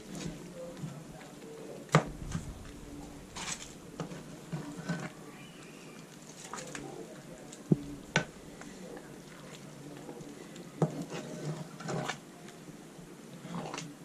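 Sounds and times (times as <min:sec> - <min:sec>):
faint voices: 0:00.0 - 0:14.0.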